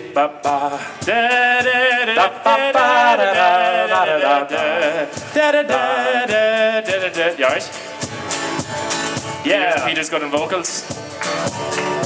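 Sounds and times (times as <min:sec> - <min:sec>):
man singing wordless notes: 0:00.0 - 0:07.8, 0:09.4 - 0:10.9.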